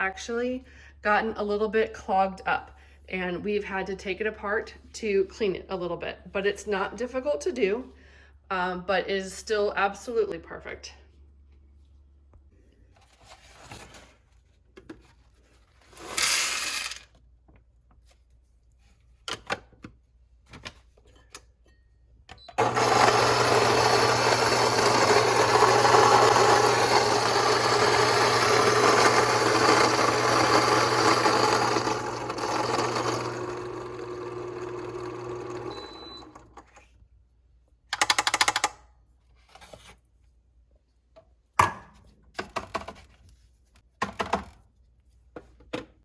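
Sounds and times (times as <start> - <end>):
coffee grinder whirring: 16.0 - 17.0, 22.6 - 36.7.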